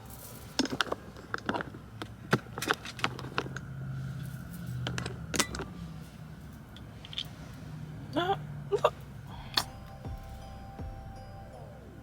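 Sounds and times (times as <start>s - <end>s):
low steady hum: 0.0s - 12.0s
clicks and knocks of objects: 0.2s - 3.7s.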